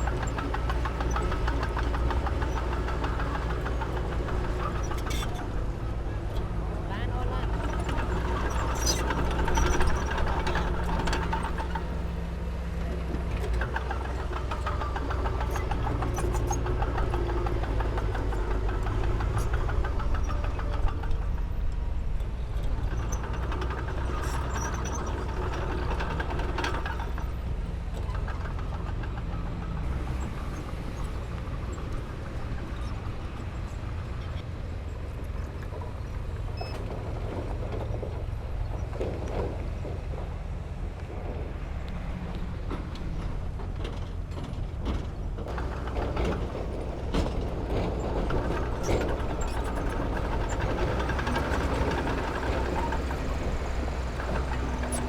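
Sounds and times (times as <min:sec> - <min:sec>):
heavy diesel engine under load: 0:00.0 - 0:55.0.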